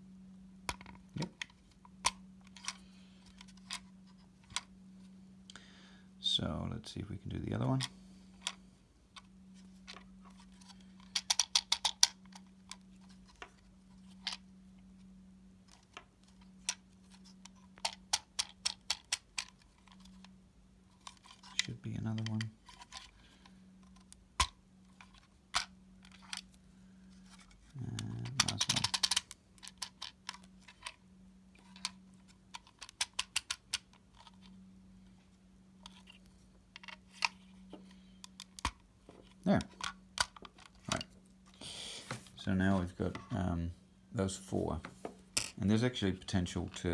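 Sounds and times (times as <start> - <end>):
faint steady hum: 0.0 - 46.9
plastic bricks clicking and rattling: 9.9 - 13.5, 16.6 - 20.3, 27.3 - 31.0, 31.6 - 34.4.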